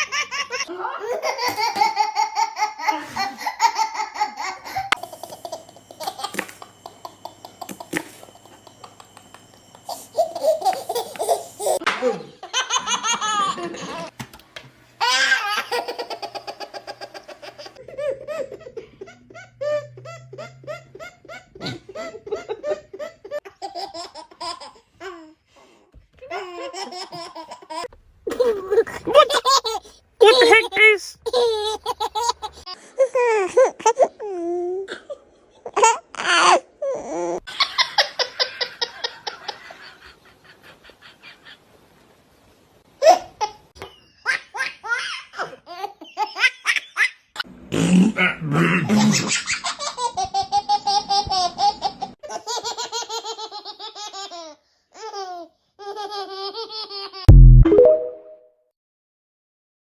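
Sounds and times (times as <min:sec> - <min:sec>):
baby laughing: 0:00.0 - 0:09.1, 0:09.9 - 0:14.1, 0:15.0 - 0:25.4, 0:26.2 - 0:39.1, 0:48.9 - 0:57.4.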